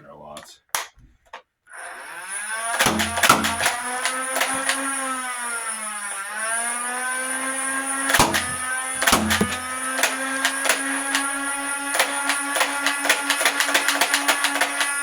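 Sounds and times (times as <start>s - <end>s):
toy blaster flywheel motor whine: 1.7s - 15.0s
trigger clicks: 2.8s - 4.8s, 8.1s - 11.3s, 11.9s - 15.0s
loud knocks: 8.2s - 10.0s.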